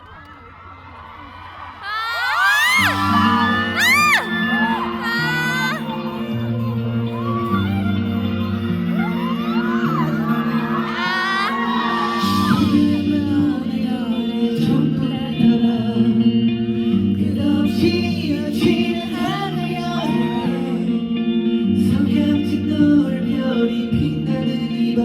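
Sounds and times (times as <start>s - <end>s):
live music with singing: 1.8s - 25.0s.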